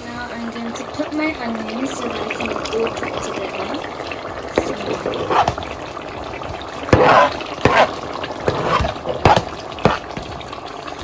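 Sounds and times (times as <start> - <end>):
food sizzling in a pan: 0.0 - 11.0
utensil knocking against pan: 4.6 - 5.7, 7.0 - 10.4.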